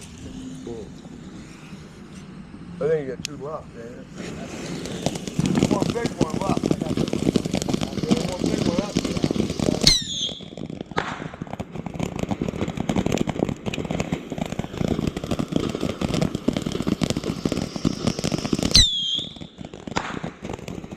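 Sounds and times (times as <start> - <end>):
firework sharp crack: 0.0 - 20.9
fireworks crackling pops: 0.0 - 20.9
falling whistle: 9.8 - 10.5, 18.5 - 19.4.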